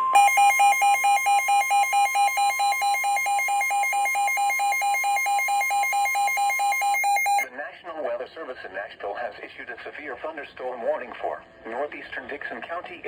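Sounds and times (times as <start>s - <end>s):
rapid pulsing alert beep: 0.0s - 7.5s
steady warning alarm tone: 0.0s - 7.5s.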